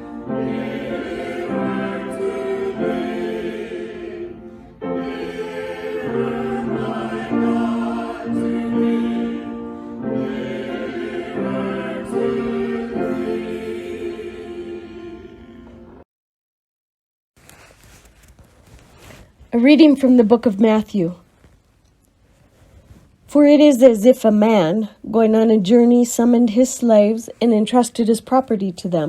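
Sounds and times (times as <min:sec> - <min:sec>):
choir singing sustained chords: 0:00.0 - 0:16.0.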